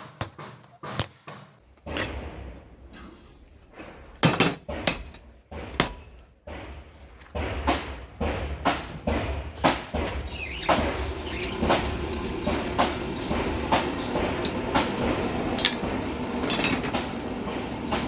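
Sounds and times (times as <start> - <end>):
low machine hum: 10.3 - 18.0.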